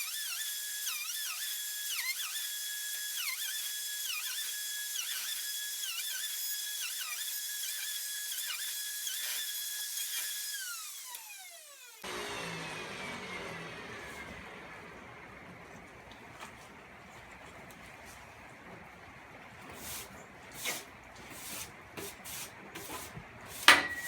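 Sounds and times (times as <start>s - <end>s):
router whining: 0.0s - 16.0s.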